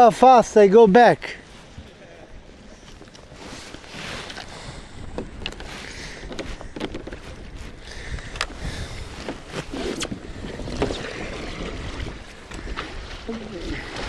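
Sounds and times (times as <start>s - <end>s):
water splashing against kayak hull: 1.4s - 14.0s
wind rumble on microphone: 4.4s - 14.0s.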